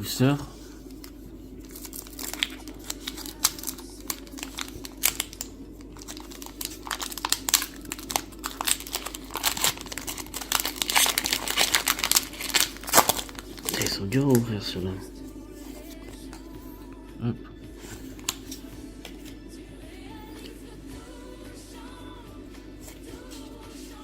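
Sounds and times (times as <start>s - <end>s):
foil wrapper crinkling: 0.7s - 14.8s, 18.0s - 19.3s.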